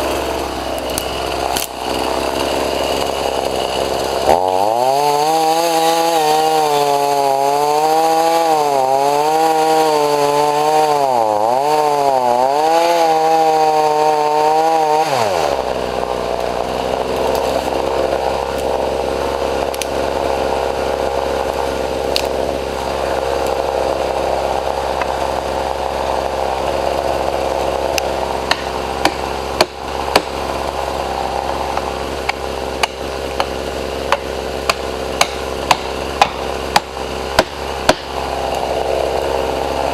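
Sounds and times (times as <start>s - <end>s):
chainsaw cutting wood: 0.0s - 39.9s
sharp knocks: 28.5s - 30.4s, 34.1s - 38.1s.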